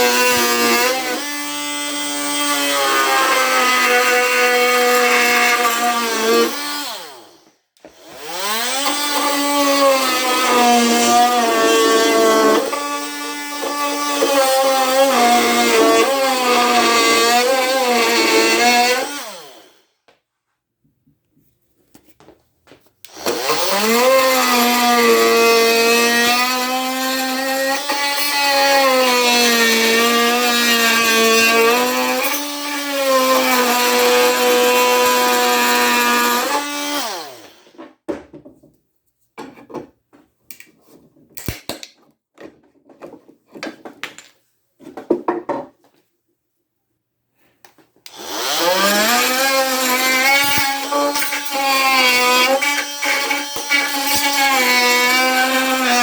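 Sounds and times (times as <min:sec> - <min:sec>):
oscillating multi-tool cutting wood: 0:00.0 - 0:19.8, 0:23.1 - 0:37.8, 0:48.1 - 0:56.0.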